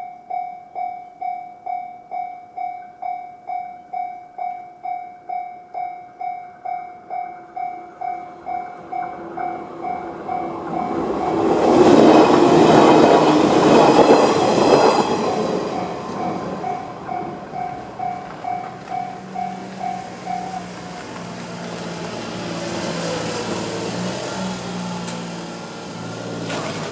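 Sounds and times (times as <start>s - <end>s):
level-crossing warning bell: 0.0s - 22.4s
electric train passing: 4.8s - 26.9s
wheels clacking over rail joints: 8.2s - 26.9s.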